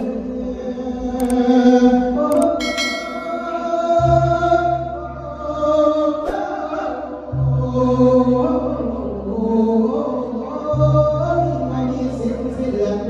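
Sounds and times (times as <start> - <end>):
low bass accompaniment: 0.0 - 13.0
person chanting melismatic notes: 0.0 - 13.0
sharp clicks: 1.2 - 1.5, 2.3 - 2.6.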